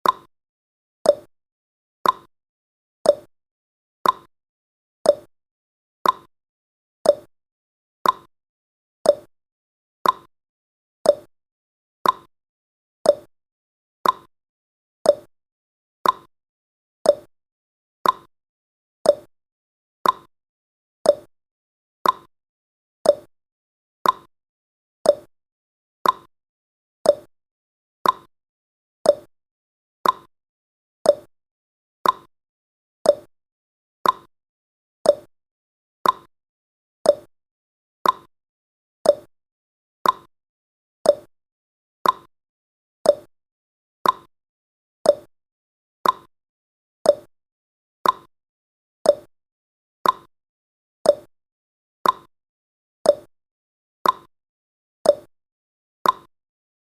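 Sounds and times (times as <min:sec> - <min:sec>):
clock ticking: 0:34.0 - 0:34.3, 0:36.0 - 0:36.3, 0:40.0 - 0:40.3, 0:42.0 - 0:42.3, 0:46.0 - 0:46.3.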